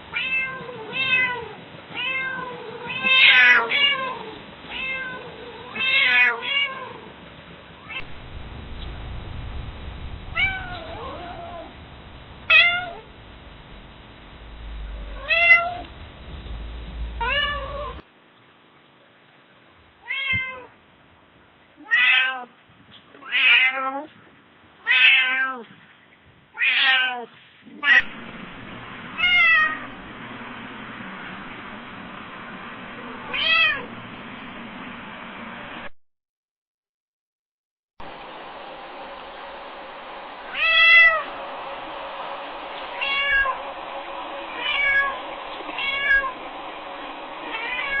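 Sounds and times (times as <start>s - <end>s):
steady background hiss: 0.0s - 24.9s, 38.0s - 48.0s
cat meowing: 0.1s - 7.1s, 10.4s - 11.7s, 15.2s - 15.8s, 17.2s - 18.0s, 24.9s - 25.6s, 42.9s - 43.6s, 44.6s - 45.2s, 45.8s - 46.4s, 47.5s - 48.0s
steady hiss: 7.0s - 18.0s, 27.4s - 35.9s, 38.0s - 48.0s.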